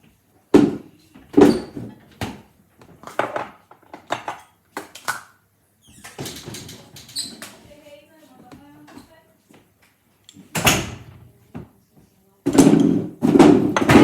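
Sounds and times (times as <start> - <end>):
dishes and utensils clattering: 12.5 - 14.0.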